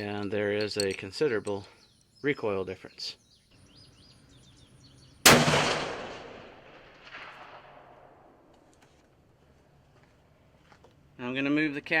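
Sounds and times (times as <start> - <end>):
rifle shot echoing: 5.2 - 8.5.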